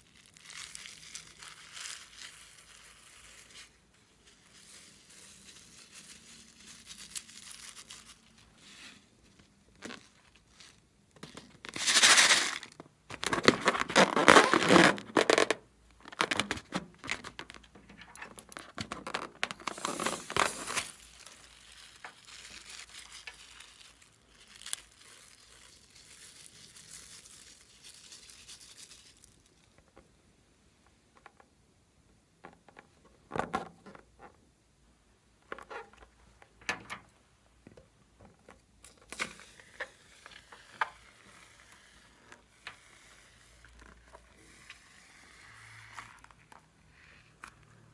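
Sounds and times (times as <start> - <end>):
slime squeezed crackling: 18.4 - 29.5.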